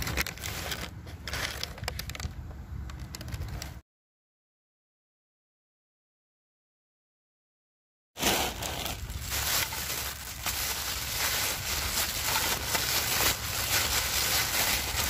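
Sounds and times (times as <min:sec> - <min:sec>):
paper rustling and crinkling: 0:00.0 - 0:02.2, 0:08.2 - 0:15.0.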